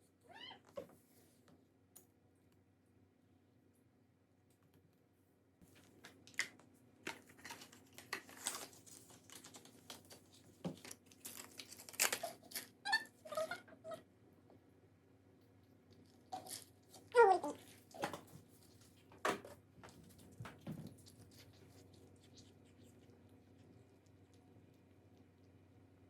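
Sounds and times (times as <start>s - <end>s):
rustling and crinkling: 5.6s - 12.8s, 15.5s - 25.4s.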